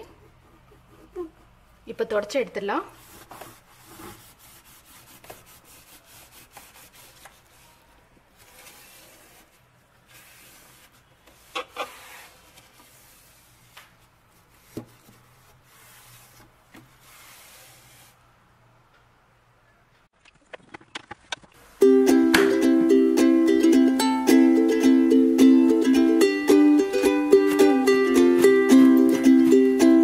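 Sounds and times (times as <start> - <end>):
cloth scrubbing inside refrigerator: 2.9 - 18.2.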